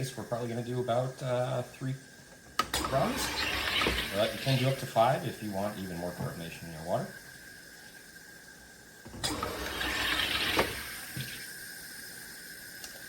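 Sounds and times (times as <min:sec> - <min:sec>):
gas hissing and bubbling into water: 0:02.8 - 0:13.0.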